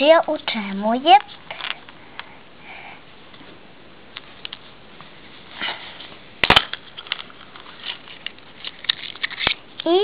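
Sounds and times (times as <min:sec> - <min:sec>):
packaging rustle: 0:06.6 - 0:09.6.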